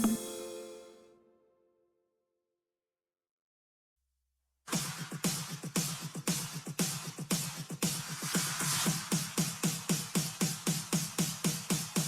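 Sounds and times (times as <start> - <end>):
electronic dance music: 0.0 - 1.1, 4.7 - 12.0.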